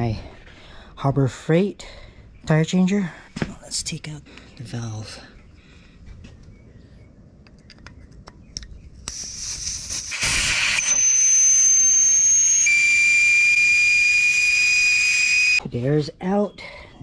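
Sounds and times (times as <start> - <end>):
air hissing out of tire valve: 9.1 - 11.5.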